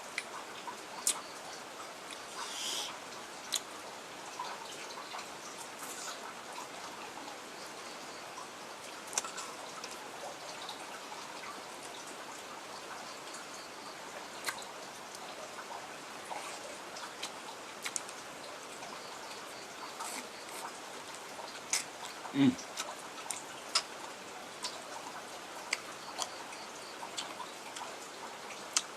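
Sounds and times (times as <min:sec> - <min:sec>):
steady hiss: 0:00.0 - 0:22.8
wet chewing: 0:19.9 - 0:25.0, 0:25.6 - 0:27.9.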